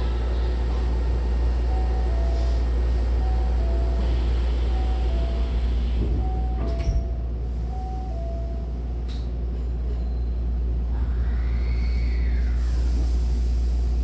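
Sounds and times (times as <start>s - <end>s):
low train hum: 0.0s - 14.0s
train doors shutting thud: 5.9s - 7.2s.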